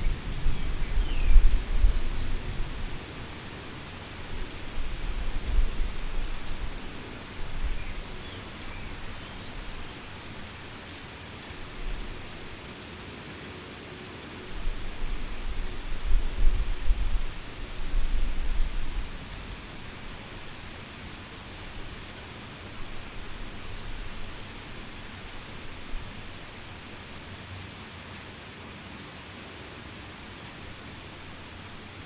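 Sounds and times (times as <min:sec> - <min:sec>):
heavy rain: 0:00.0 - 0:32.0.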